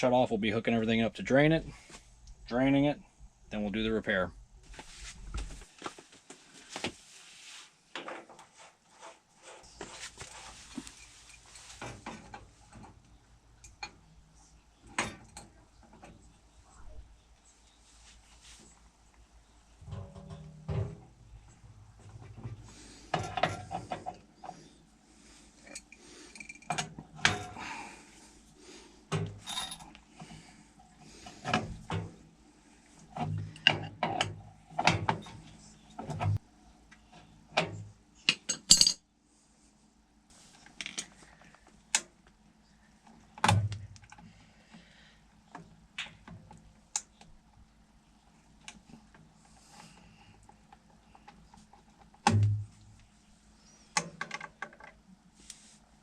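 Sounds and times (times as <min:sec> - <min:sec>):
metallic tool clanks and knocks: 0:38.3 - 0:39.0.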